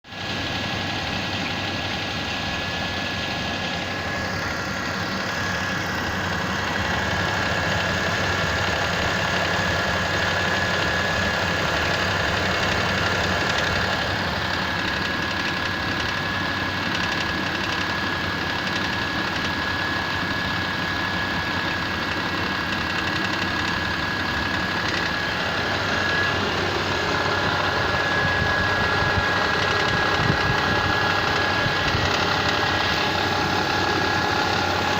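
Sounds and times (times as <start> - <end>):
car engine idling: 0.0 - 34.9
rapid engine knock: 0.1 - 34.9.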